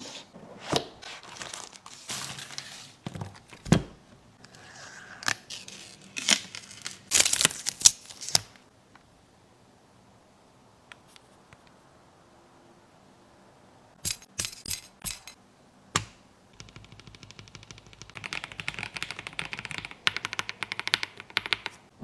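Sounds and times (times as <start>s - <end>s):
rustling and crinkling of handled objects: 0.0s - 8.7s.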